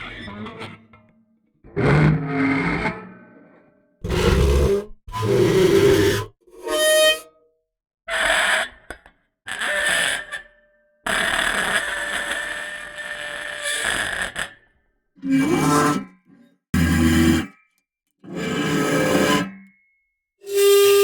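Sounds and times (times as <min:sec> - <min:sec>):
bowed hard objects rasping: 0:04.0 - 0:06.1.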